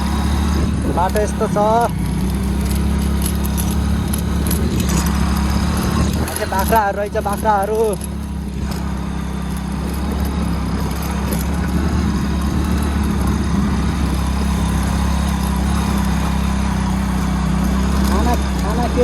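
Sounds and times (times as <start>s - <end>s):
rushing wind noise: 0.0s - 6.8s, 8.3s - 16.5s
motorcycle engine droning: 0.0s - 19.0s.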